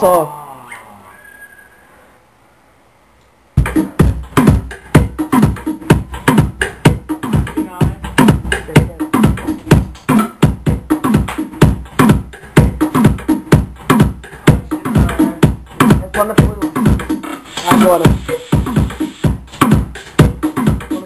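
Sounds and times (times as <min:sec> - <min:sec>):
bass-heavy funk music: 0:03.6 - 0:21.0.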